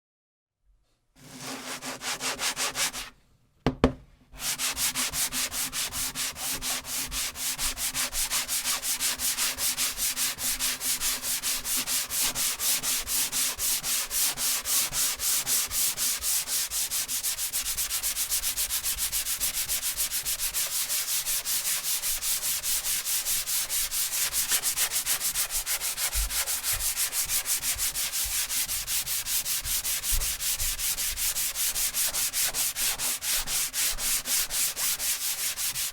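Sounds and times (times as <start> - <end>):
sandpaper rubbing on wood: 1.2 - 3.1, 4.4 - 35.9
sharp knock: 3.7 - 4.0.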